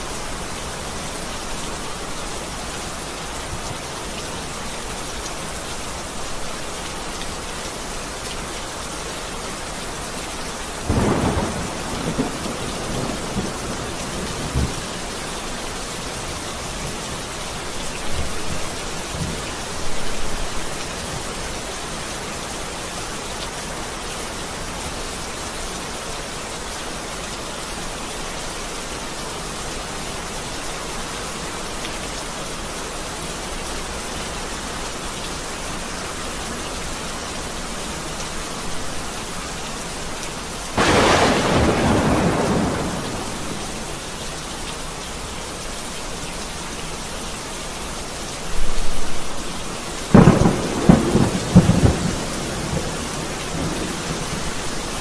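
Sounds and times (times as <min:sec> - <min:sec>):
steady rain falling: 0:00.0 - 0:55.0
thunderclap rumbling: 0:10.9 - 0:14.8, 0:40.8 - 0:43.9, 0:50.1 - 0:54.6.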